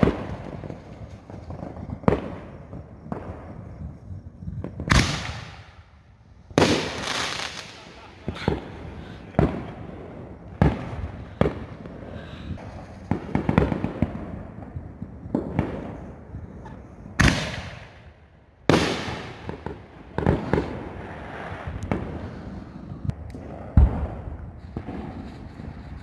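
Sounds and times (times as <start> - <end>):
firework hiss: 0.0 - 5.8, 6.5 - 14.5, 24.5 - 26.0
fireworks bangs: 0.0 - 26.0.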